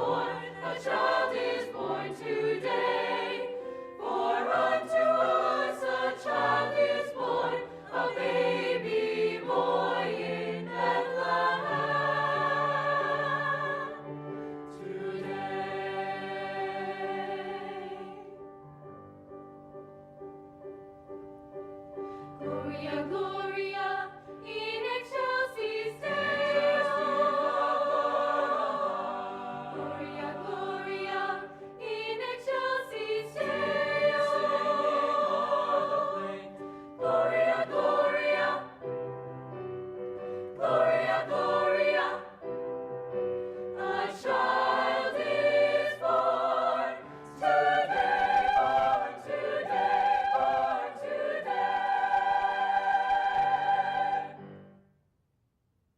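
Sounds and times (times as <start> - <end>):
choir singing a carol: 0.0 - 18.6, 22.3 - 54.7.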